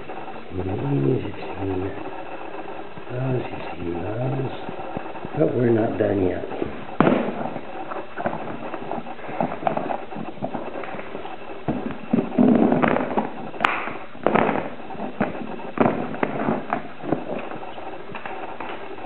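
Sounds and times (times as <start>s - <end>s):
rustle and clatter: 6.5s - 19.0s.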